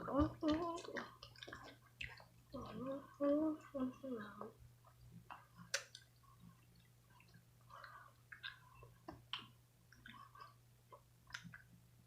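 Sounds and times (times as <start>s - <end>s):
low steady hum: 0.0s - 12.0s
chewing candy: 0.3s - 2.8s.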